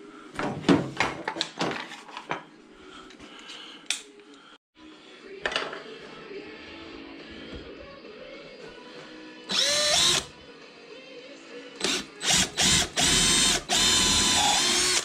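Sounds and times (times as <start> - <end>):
power drill drilling: 9.5 - 10.3, 11.8 - 15.0.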